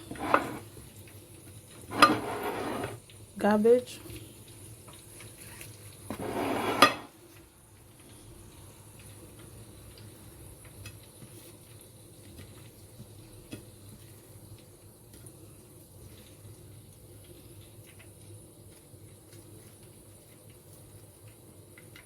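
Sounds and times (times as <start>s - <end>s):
dishes scraping: 0.0s - 0.7s, 1.9s - 3.0s, 6.1s - 7.2s
dish clinking: 1.9s - 3.0s, 6.4s - 7.1s.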